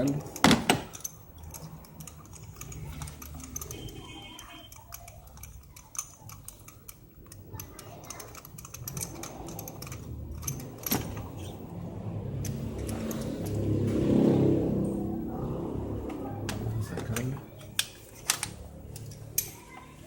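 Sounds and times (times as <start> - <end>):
metal tools clinking: 0.0 - 11.6
socket ratchet clicking: 0.3 - 11.5.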